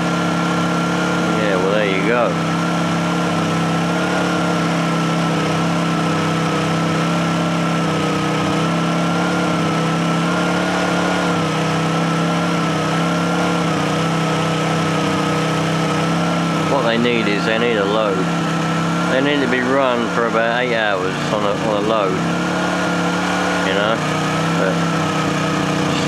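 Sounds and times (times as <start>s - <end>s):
generators running: 0.0s - 26.0s.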